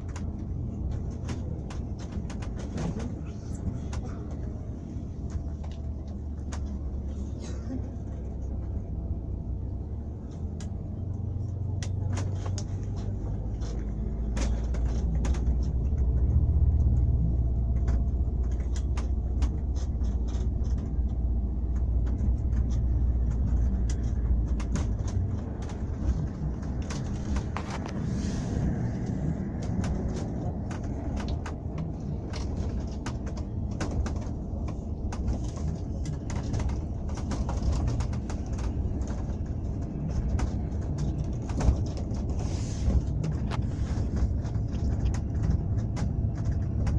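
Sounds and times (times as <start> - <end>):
short rattles and knocks: 0.0 - 8.8, 11.8 - 46.9
engine and road rumble: 0.0 - 46.9.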